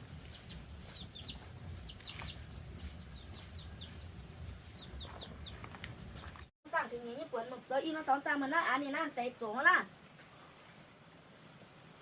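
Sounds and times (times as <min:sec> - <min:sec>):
small birds chirping: 0:00.0 - 0:06.5.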